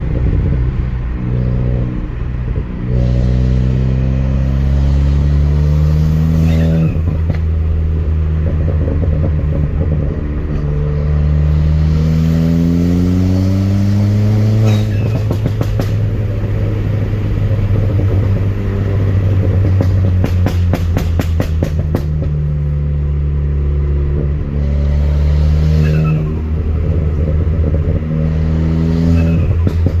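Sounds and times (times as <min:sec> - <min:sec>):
car engine revving: 0:00.0 - 0:30.0.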